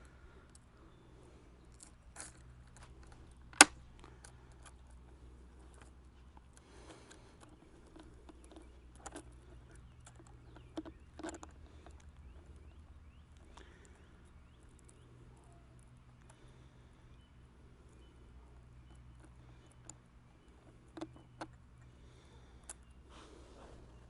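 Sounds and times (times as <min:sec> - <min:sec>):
sharp loud click: 0:03.5 - 0:03.8.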